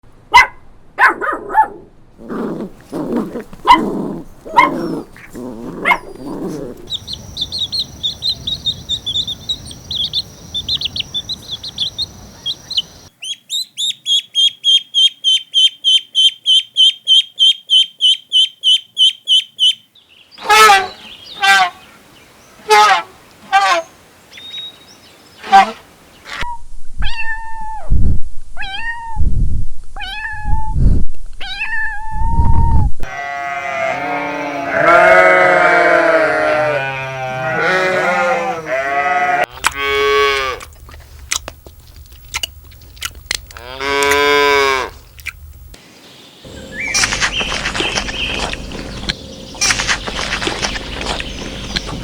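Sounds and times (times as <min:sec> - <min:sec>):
cat meowing: 0:28.6 - 0:29.2, 0:30.0 - 0:30.7, 0:31.4 - 0:32.1
animals bleating: 0:33.0 - 0:40.6, 0:43.6 - 0:45.0.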